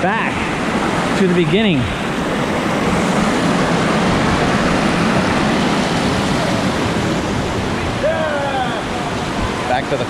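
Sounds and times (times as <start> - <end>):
rushing water: 0.0 - 10.0.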